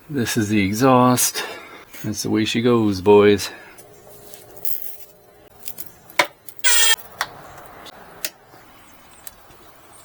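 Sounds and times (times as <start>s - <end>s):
sharp clicks: 6.6s - 7.0s.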